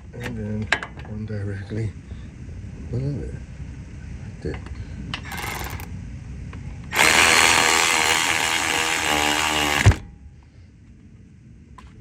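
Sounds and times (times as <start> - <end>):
power tool running: 5.3 - 5.9, 6.9 - 10.1
power tool clunk: 6.9 - 10.1.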